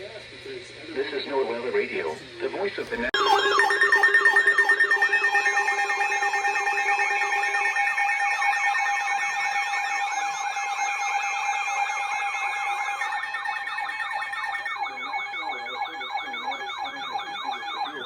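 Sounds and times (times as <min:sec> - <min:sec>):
steady tones: 0:02.8 - 0:14.7
electronic sirens wailing: 0:02.9 - 0:18.0.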